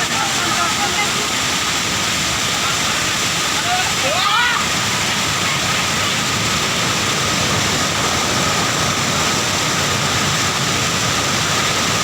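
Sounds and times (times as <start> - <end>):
floodwater rushing: 0.0 - 12.0.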